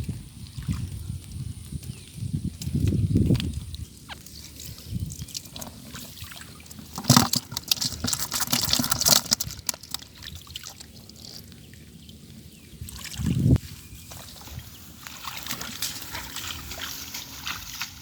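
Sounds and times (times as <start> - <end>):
water splashing and pouring: 4.2 - 12.2, 12.8 - 18.0.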